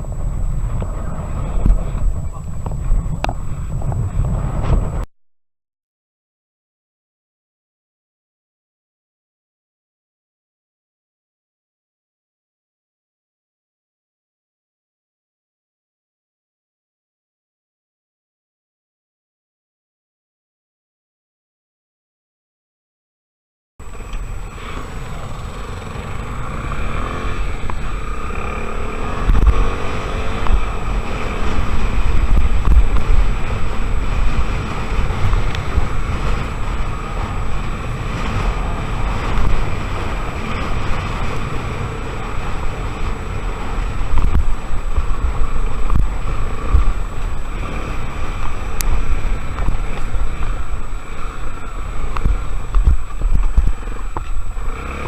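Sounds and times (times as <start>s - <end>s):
motorcycle engine running: 0.0s - 5.1s, 23.8s - 55.0s
wind buffeting microphone: 0.0s - 5.1s, 23.8s - 55.0s.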